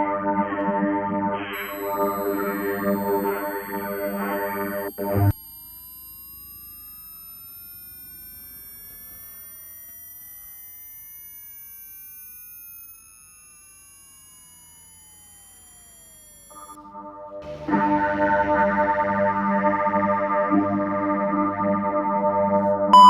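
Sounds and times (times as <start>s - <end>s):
steady high-pitched tones: 0.7s - 16.8s
falling sine tone: 1.5s - 16.8s
rising sine tone: 1.5s - 16.8s.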